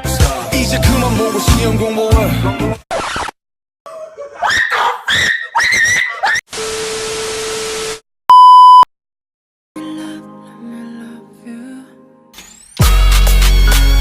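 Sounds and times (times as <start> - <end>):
music: 0.0 - 2.8, 9.8 - 14.0
loud electronic censor beep: 8.3 - 8.9.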